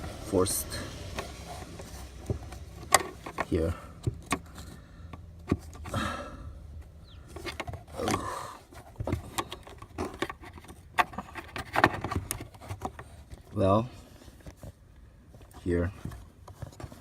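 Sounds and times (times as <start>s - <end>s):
hands handling plastic trim: 6.8s - 17.0s.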